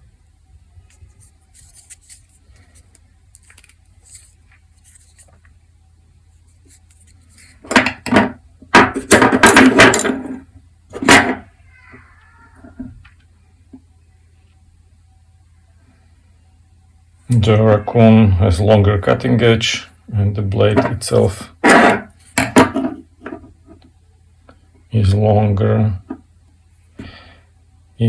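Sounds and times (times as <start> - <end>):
rubbing and clattering: 0.9 - 5.4, 6.5 - 11.5, 20.7 - 23.8.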